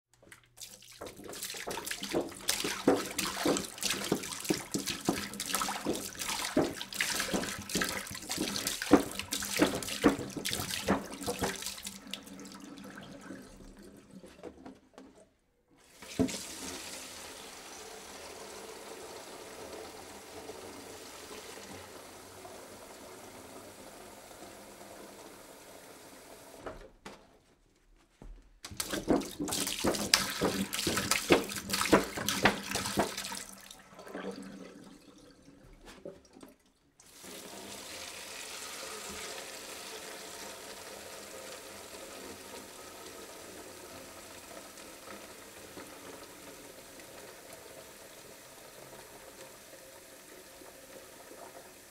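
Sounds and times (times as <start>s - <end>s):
water pouring from a jug: 0.2s - 15.1s, 28.7s - 40.7s.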